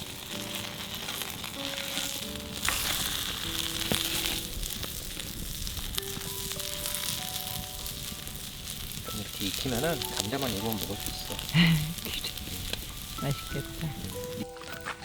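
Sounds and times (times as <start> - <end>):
potato hash sizzling in a pan: 0.0 - 14.5
soft slow background music: 0.0 - 15.0.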